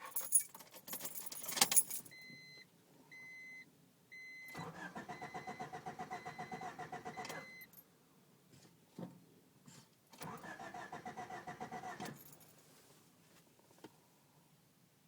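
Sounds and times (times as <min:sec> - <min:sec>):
keys jangling in ignition: 0:00.0 - 0:02.2, 0:11.8 - 0:12.6
starter motor cranking engine: 0:10.2 - 0:12.1.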